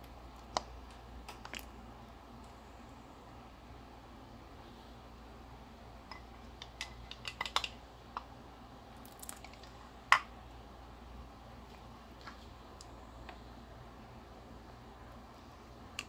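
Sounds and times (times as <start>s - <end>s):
kitchenware clicks and clinks: 6.1s - 7.8s.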